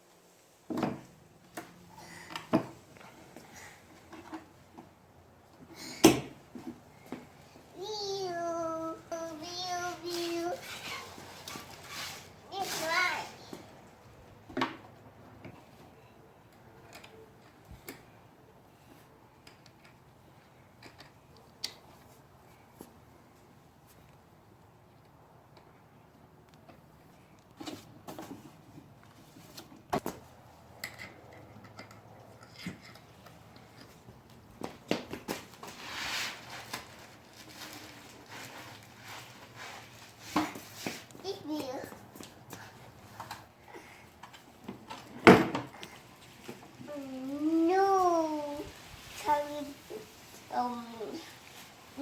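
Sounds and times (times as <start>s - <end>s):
short rustle: 9.2s - 13.7s, 35.4s - 41.8s, 45.9s - 52.0s.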